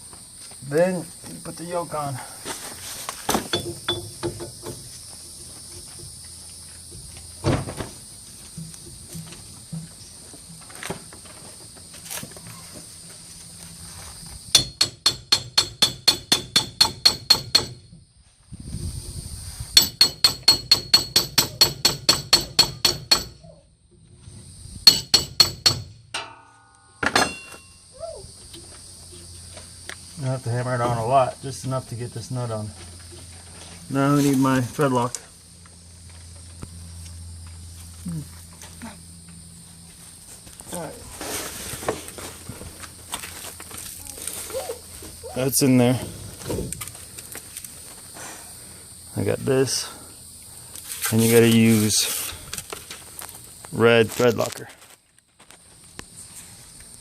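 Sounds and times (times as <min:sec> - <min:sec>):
hammer striking metal: 0:14.5 - 0:17.8, 0:19.8 - 0:23.4, 0:24.9 - 0:27.7.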